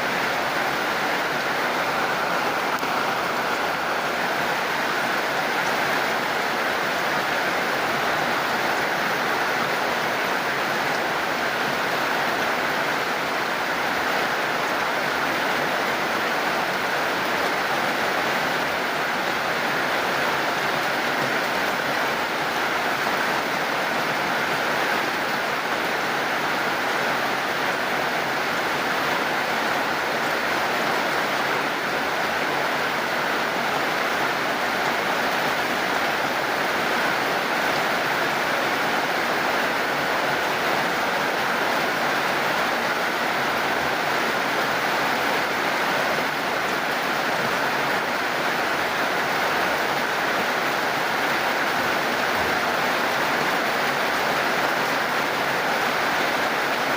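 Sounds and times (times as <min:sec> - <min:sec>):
steady rain hiss: 0:00.0 - 0:56.9.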